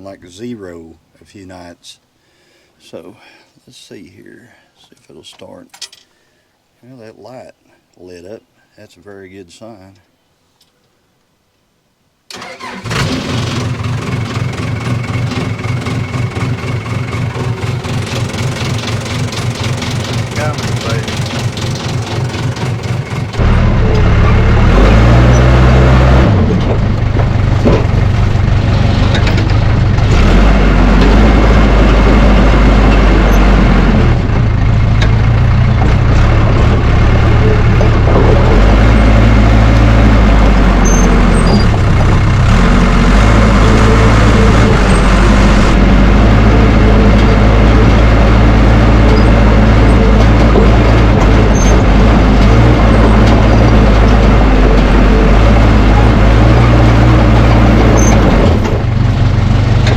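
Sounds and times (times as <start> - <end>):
bulldozer diesel engine running: 12.3 - 59.9.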